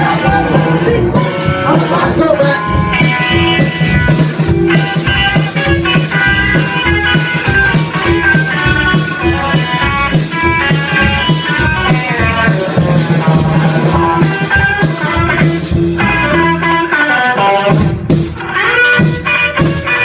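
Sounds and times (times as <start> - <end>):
bass: 0.0 - 20.0
electric guitar lines: 0.0 - 20.0
steady drum beat: 0.0 - 20.0.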